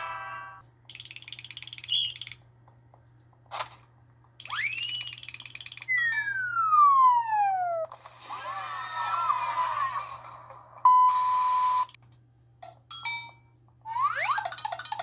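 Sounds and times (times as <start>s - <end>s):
tone sliding down in pitch: 5.9s - 7.9s
rising glide: 6.0s - 8.4s.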